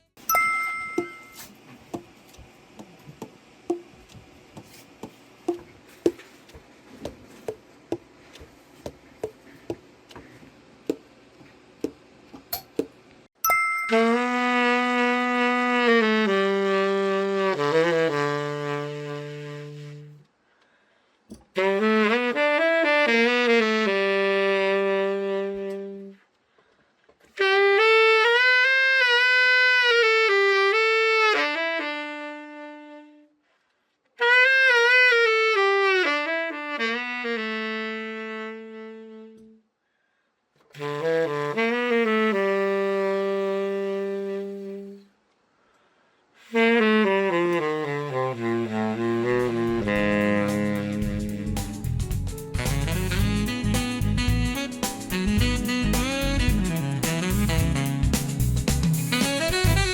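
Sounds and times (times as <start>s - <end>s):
tenor saxophone playing phrases: 13.9s - 20.3s, 21.5s - 26.3s, 27.3s - 33.4s, 34.2s - 39.7s, 40.7s - 45.2s, 46.4s - 59.9s.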